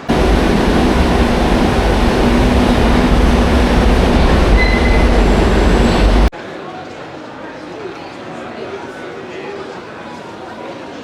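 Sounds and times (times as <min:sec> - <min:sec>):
high squeal: 0:00.0 - 0:06.3
train rumbling and rattling: 0:00.0 - 0:06.3.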